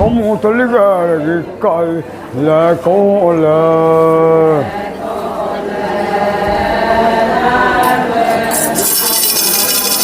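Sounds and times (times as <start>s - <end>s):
group of voices chanting: 4.5s - 8.8s.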